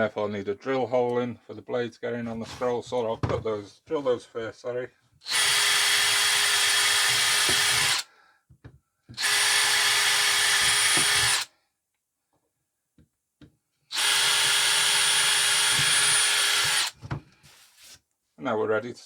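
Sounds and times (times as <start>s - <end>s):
electric drill running: 5.3s - 8.0s, 9.2s - 11.5s, 13.9s - 17.0s.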